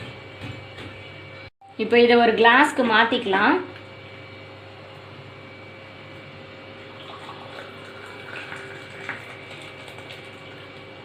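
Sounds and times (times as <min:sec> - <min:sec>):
milk pouring into a glass: 0:06.8 - 0:10.9.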